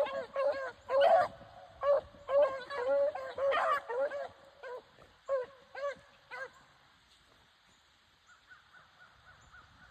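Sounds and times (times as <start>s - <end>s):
hounds baying: 0.0s - 6.7s.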